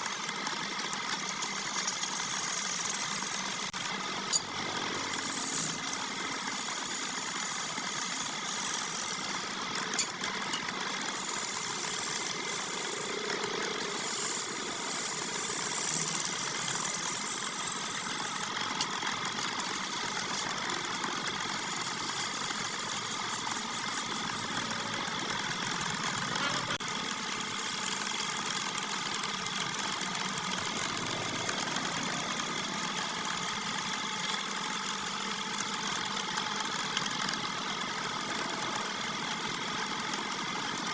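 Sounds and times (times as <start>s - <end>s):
wood lathe motor hum: 0.0s - 40.9s.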